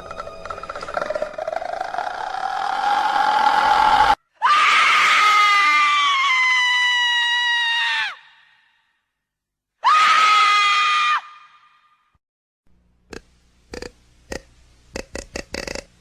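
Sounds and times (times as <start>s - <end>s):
horror screams: 0.0s - 6.6s.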